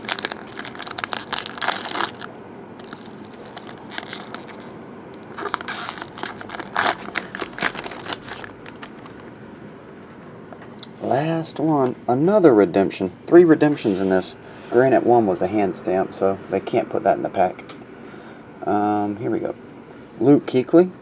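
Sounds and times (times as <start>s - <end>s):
plastic packaging crinkling: 0.0s - 9.3s
handling noise: 0.0s - 9.4s.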